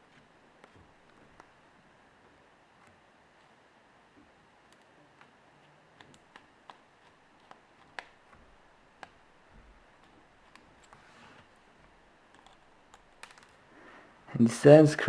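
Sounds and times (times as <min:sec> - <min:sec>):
screwdriver clicks and taps: 0:06.0 - 0:09.2.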